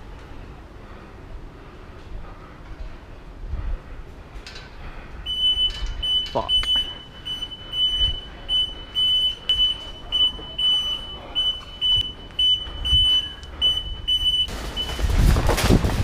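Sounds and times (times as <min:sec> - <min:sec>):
wind on microphone: 0:02.1 - 0:04.4, 0:12.6 - 0:16.0
electronic alarm beeping: 0:05.3 - 0:15.2.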